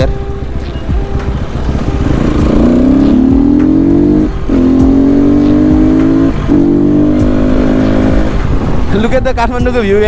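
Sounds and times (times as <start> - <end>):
motorcycle engine accelerating: 0.6 - 8.9.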